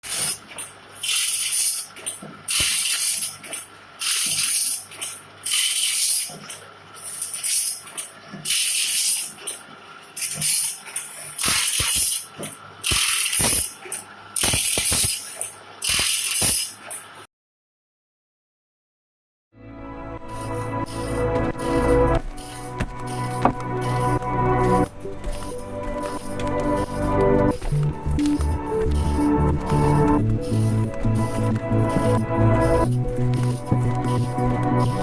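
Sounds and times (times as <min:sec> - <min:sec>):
grinding stone hissing on blade: 0:14.4 - 0:16.8, 0:20.3 - 0:35.0
motor hum: 0:19.9 - 0:35.0.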